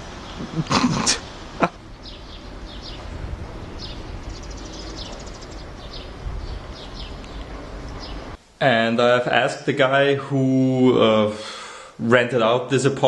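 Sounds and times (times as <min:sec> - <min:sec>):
small birds chirping: 0:00.0 - 0:08.4
low city rumble: 0:00.0 - 0:13.0.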